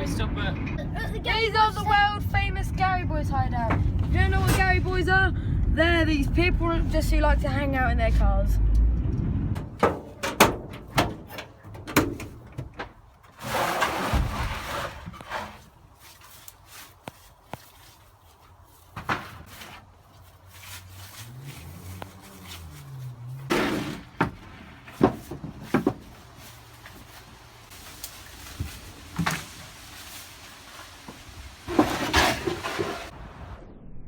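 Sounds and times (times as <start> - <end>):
knocks and thuds: 9.5 - 13.0, 23.4 - 26.2.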